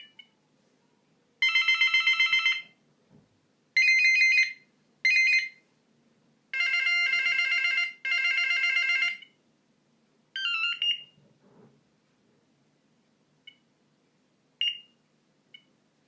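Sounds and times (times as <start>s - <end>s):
electronic mobile phone ringtones: 1.4s - 2.8s, 3.8s - 5.6s, 6.6s - 9.4s, 10.4s - 11.1s.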